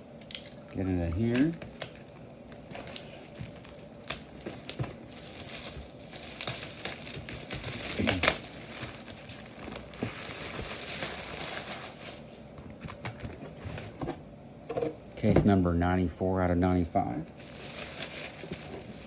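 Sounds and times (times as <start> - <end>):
wrapping rustling: 1.2 - 13.9, 17.4 - 19.0.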